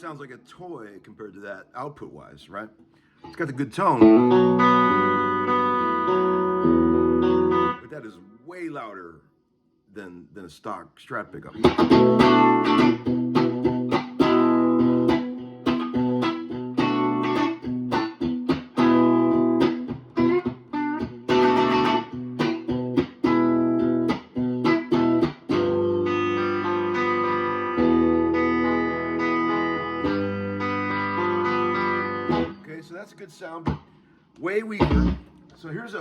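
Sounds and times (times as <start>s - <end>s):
electric guitar chords: 3.8s - 7.9s, 11.5s - 32.8s, 34.8s - 35.5s.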